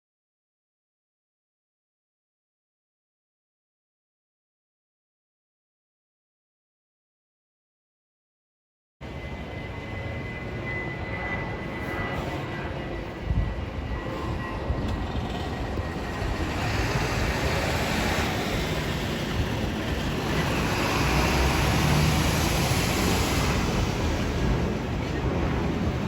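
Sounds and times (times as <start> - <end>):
airliner engine rumble: 9.0 - 26.0.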